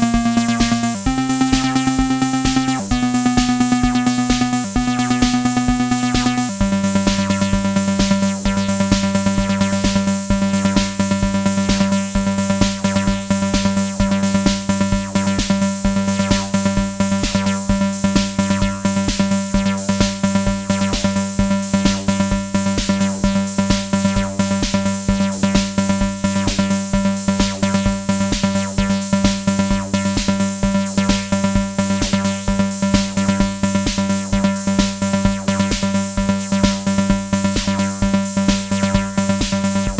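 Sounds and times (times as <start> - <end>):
buzzy analog bass synthesizer: 0.0 - 39.9.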